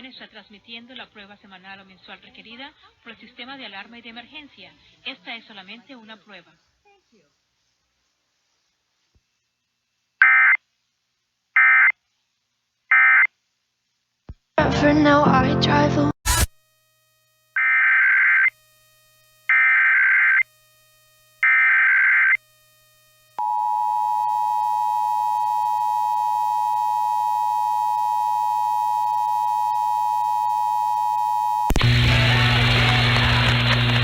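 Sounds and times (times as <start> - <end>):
noisy broadcast audio: 0.0 - 7.8, 14.3 - 18.5, 31.7 - 34.0
harsh digital data bursts: 16.3 - 18.7, 19.4 - 20.6, 21.2 - 22.4.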